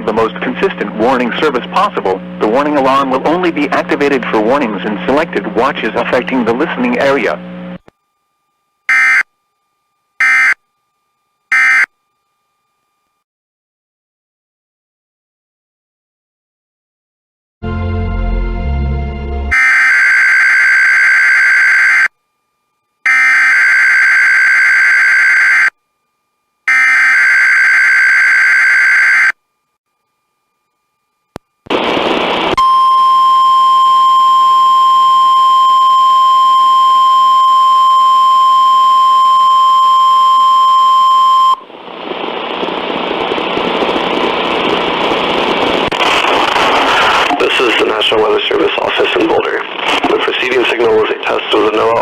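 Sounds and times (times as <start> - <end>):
steady warning alarm tone: 8.2 - 13.2, 19.5 - 22.2, 23.0 - 31.2, 32.6 - 41.7
crackle of static: 28.9 - 32.6, 33.8 - 52.0
radio hiss: 44.2 - 52.0.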